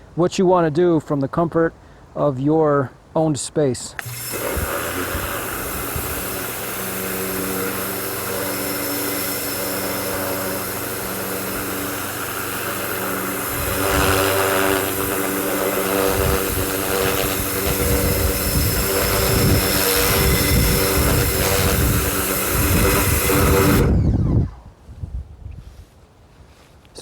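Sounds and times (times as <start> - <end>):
water jet hissing: 4.0 - 23.8
pressure washer motor humming: 4.0 - 24.6.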